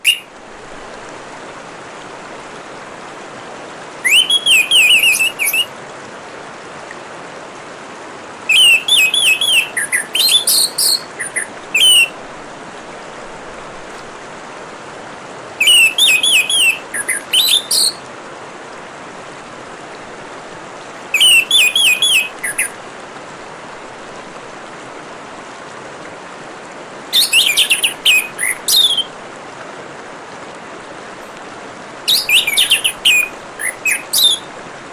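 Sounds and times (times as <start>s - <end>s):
thrush whistled song: 0.0s - 0.3s, 4.0s - 5.7s, 8.5s - 12.2s, 15.6s - 18.0s, 21.0s - 22.8s, 27.1s - 29.2s, 32.1s - 34.6s
trickling water: 0.0s - 34.9s.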